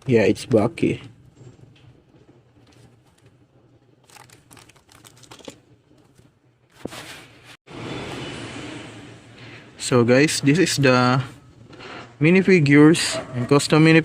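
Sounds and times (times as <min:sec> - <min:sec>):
plastic packaging clicks and rustling: 0:04.0 - 0:06.4.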